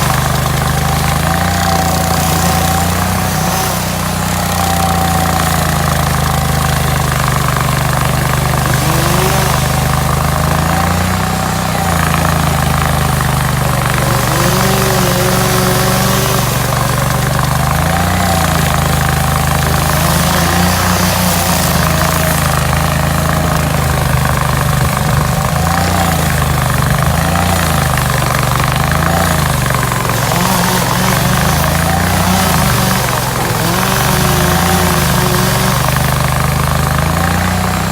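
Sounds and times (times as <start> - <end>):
stump grinder running: 0.0 - 37.9.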